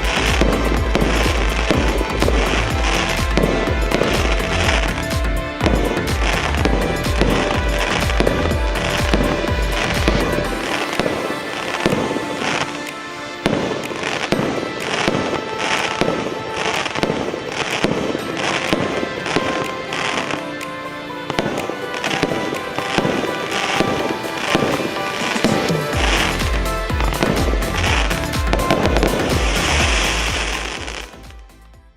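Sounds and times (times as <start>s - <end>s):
background music: 0.0s - 31.9s.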